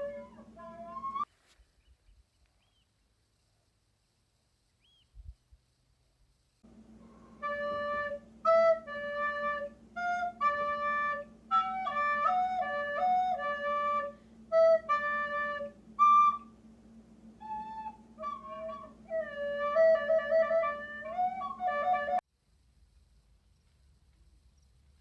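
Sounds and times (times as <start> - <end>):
recorder playing slow tune: 0.0 - 1.3, 6.9 - 16.7
steady low hum: 2.1 - 25.0.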